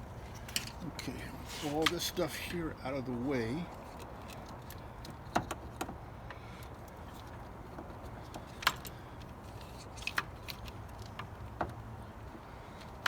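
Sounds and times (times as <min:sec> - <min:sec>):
parts and cables clicking: 0:03.7 - 0:06.0, 0:06.6 - 0:13.0.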